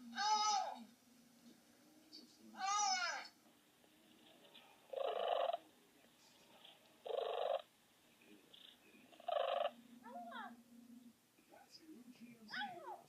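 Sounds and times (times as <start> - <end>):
cat chirping calls: 0.2 - 0.8, 2.6 - 3.3.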